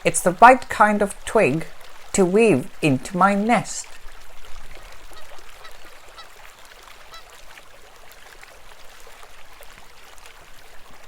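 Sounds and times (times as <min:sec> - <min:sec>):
river water babbling: 0:00.0 - 0:11.0
waterfowl honking: 0:04.8 - 0:07.5.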